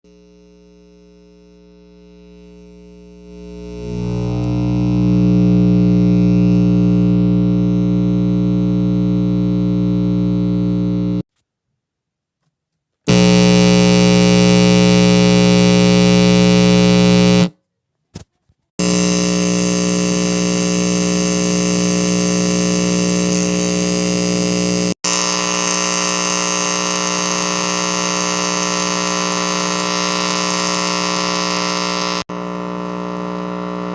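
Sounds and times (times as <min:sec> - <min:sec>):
electrical hum and buzz with hiss: 0:00.1 - 0:11.2, 0:13.1 - 0:17.5, 0:18.8 - 0:33.9.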